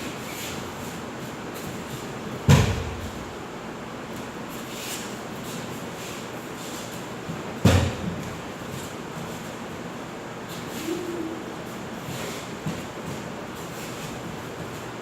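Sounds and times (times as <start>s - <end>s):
body hitting mat heavy thud: 2.4s - 3.1s, 7.6s - 8.2s.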